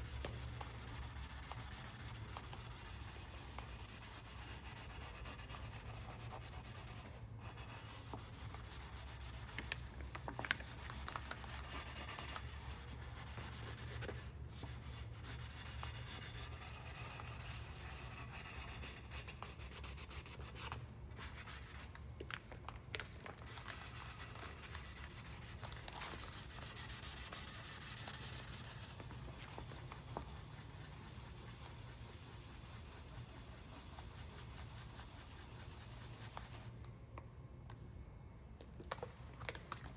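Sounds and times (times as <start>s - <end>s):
sandpaper rubbing strokes: 23.6s - 36.7s.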